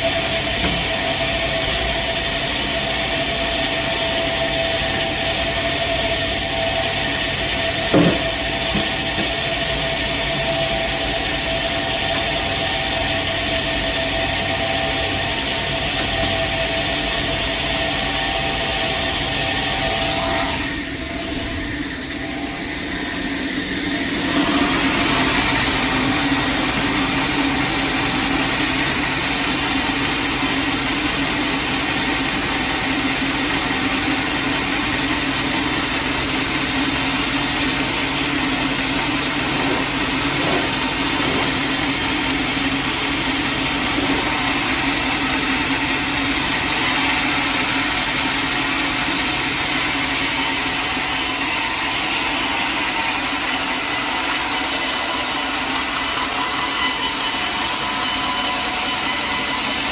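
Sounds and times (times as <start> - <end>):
mill engine running: 0.0 - 59.9
saw cutting through log: 0.0 - 59.9.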